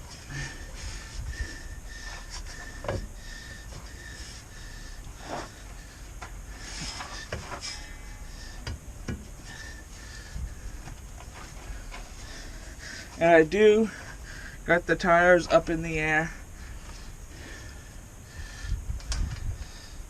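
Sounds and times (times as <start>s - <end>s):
rubbing and scraping of parts: 0.0s - 13.2s.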